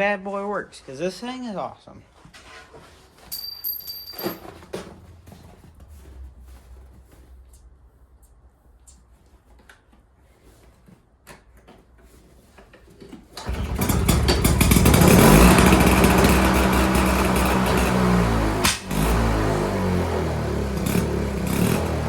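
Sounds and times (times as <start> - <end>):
snowblower engine running: 13.4 - 22.0.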